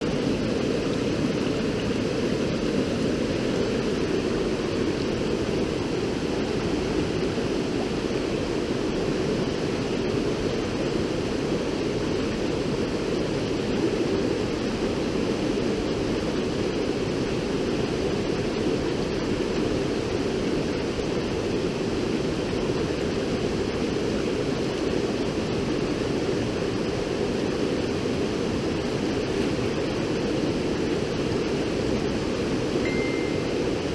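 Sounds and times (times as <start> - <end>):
river water rushing: 23.9 - 33.9.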